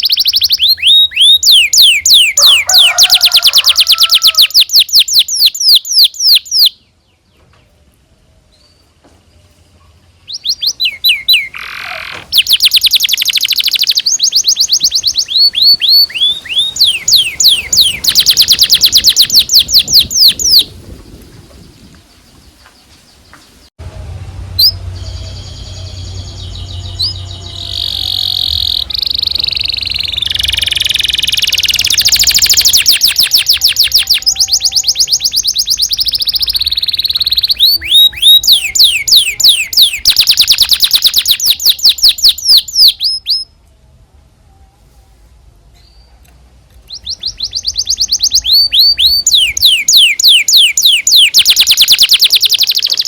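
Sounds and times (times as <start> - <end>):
canary singing trills: 0.0 - 7.2, 9.9 - 22.6, 24.4 - 43.6, 45.8 - 53.0
low hum: 23.8 - 32.6.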